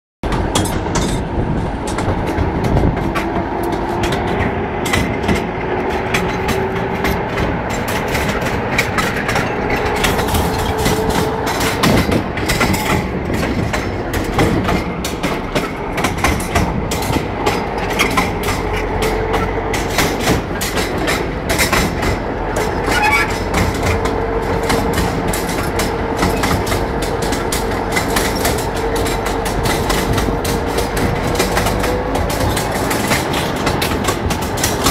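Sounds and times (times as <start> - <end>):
steady rumble: 0.2 - 34.9
wheels clacking over rail joints: 0.2 - 34.9.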